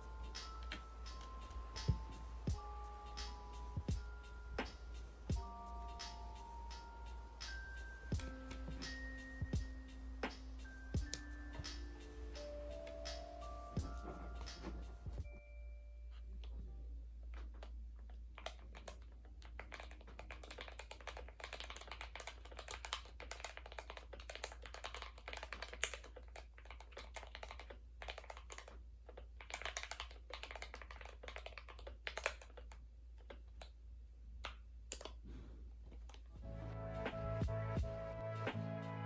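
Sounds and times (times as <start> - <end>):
mechanical keyboard typing clacks: 18.4 - 28.8.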